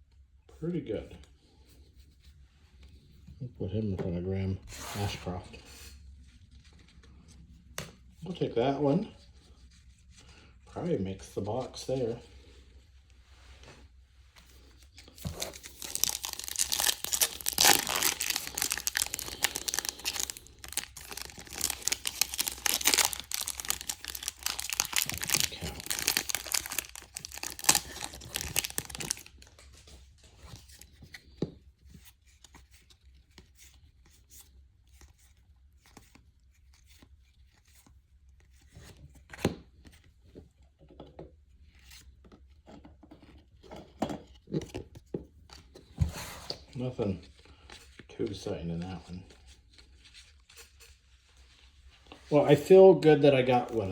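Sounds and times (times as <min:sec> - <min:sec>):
wrapper tearing and crinkling: 0:15.0 - 0:29.5.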